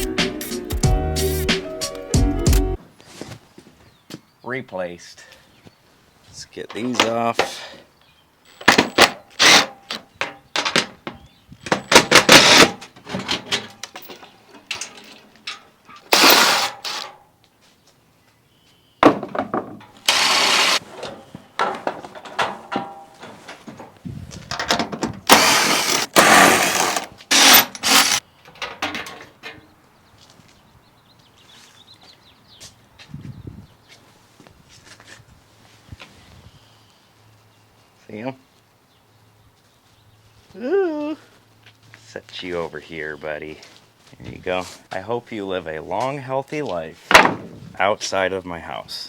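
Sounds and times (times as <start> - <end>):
power driver removing screws: 8.6 - 9.8, 11.8 - 12.8, 16.0 - 17.1, 20.0 - 20.8, 25.2 - 28.2.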